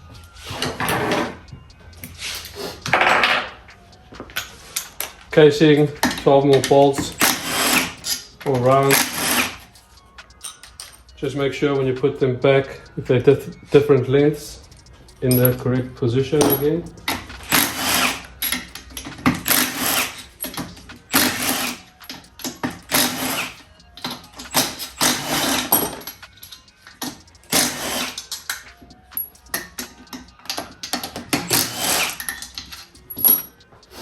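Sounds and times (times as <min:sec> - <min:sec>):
ratchet ticking: 0:00.0 - 0:34.0.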